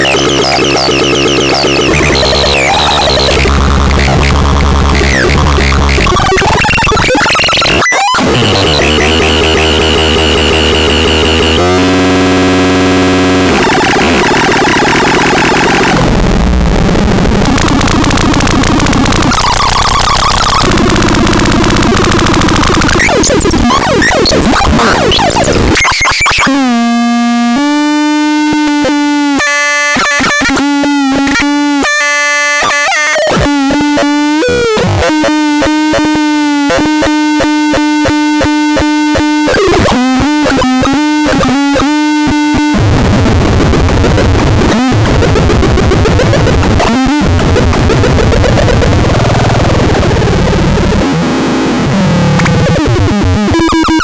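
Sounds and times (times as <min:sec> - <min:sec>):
rough distorted noise: 0:00.0 - 0:24.4
buzzy stuttering electronic tone: 0:00.0 - 0:54.0.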